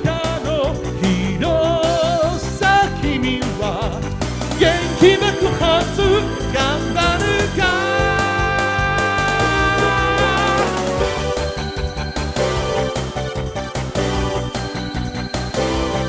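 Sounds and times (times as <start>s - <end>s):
drums: 0.0s - 16.0s
pop melody line with vibrato: 0.0s - 16.0s.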